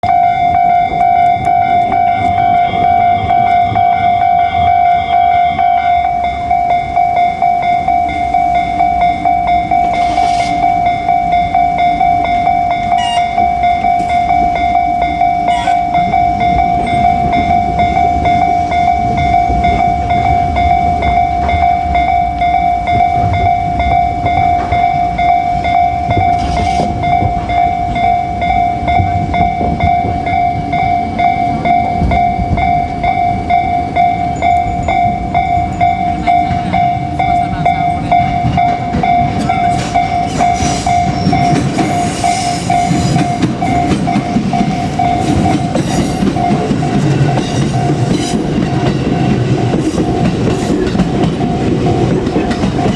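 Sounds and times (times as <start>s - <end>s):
level crossing warning bell: 0.0s - 52.9s
train wheels rumbling and clacking: 0.0s - 52.9s.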